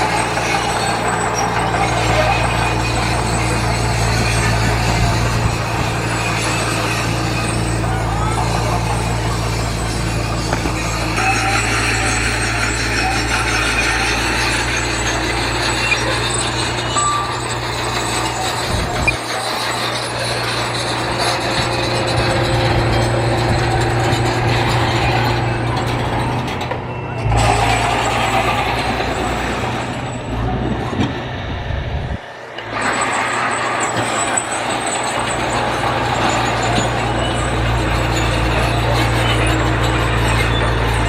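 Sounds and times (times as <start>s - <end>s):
diesel engine under load: 0.0s - 41.0s.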